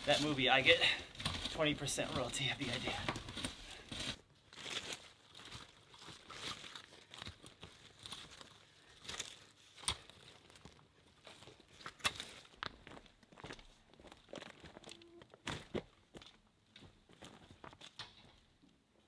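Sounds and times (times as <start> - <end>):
faint rustling and crunching: 0.0 - 18.8.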